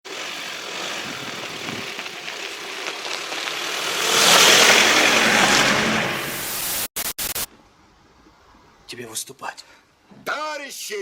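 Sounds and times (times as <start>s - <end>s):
car passing by: 2.6s - 6.9s.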